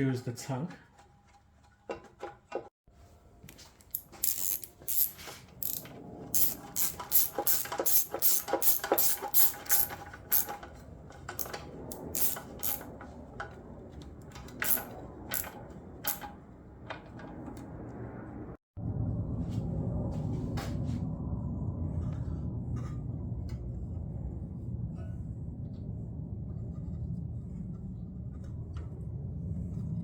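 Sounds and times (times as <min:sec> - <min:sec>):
ratchet clicking: 0:03.8 - 0:10.6, 0:11.4 - 0:12.9, 0:14.5 - 0:16.3.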